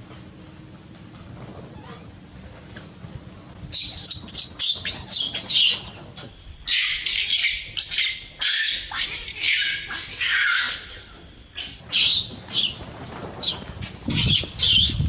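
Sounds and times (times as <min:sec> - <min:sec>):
baby monkey squealing: 0:03.7 - 0:11.0, 0:11.9 - 0:12.8, 0:13.4 - 0:15.0.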